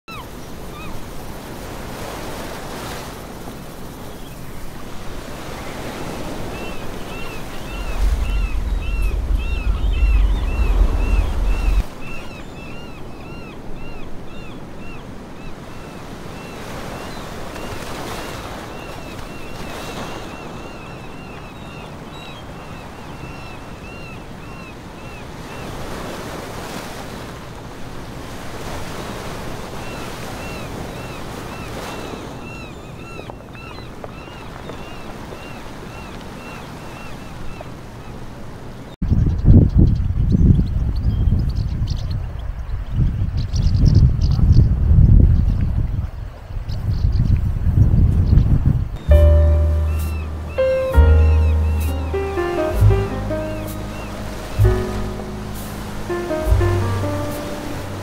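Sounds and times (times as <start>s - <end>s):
waves washing: 0.5s - 13.0s, 49.0s - 58.0s
wind on microphone: 4.6s - 12.8s, 39.0s - 52.0s
short high chirps: 49.0s - 58.0s.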